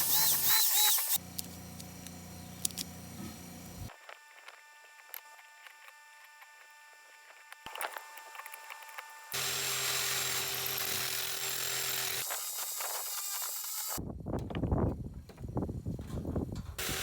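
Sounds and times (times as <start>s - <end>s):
power tool running: 0.0s - 1.2s, 9.2s - 14.0s, 16.8s - 17.0s.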